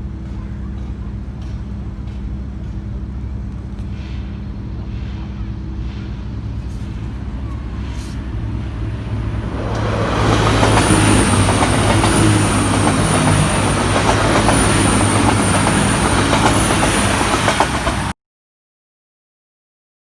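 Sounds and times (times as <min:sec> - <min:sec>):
large vehicle rumbling: 0:00.0 - 0:18.2.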